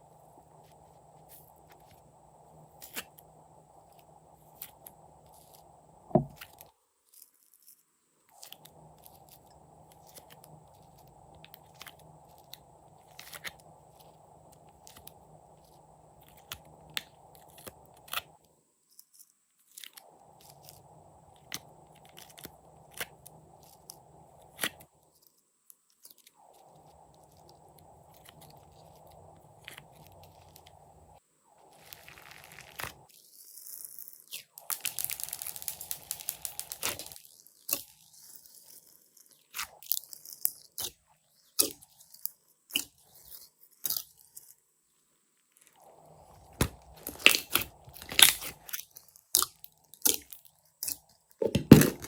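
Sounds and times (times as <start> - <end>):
hands squeezing slime: 31.7 - 33.0.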